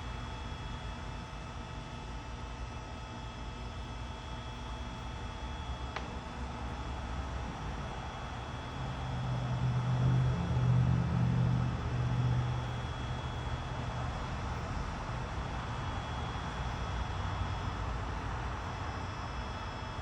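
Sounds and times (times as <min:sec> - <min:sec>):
low motor hum: 0:04.9 - 0:18.7.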